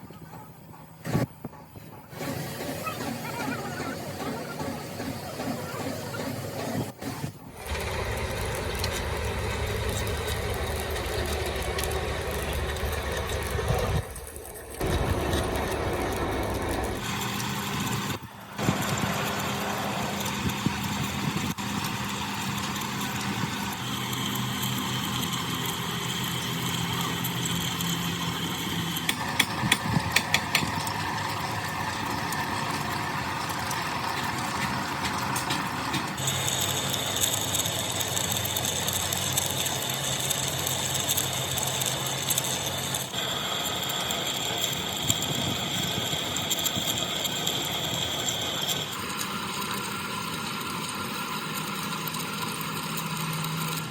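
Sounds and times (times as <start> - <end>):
sharp clicks and knocks: 0.0 - 43.2
machine humming: 2.0 - 53.9.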